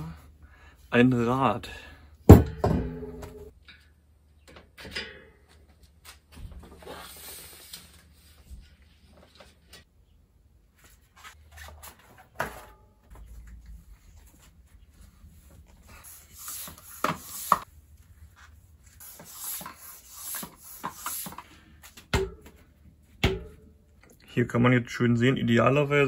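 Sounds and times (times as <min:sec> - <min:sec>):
bicycle wheel rubbing and scraping: 0:06.7 - 0:09.7, 0:13.2 - 0:21.9.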